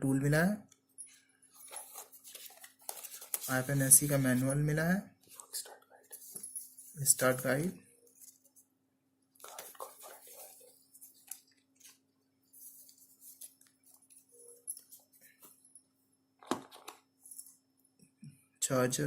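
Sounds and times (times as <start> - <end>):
packaging clicks taps and rustles: 9.4 - 10.6.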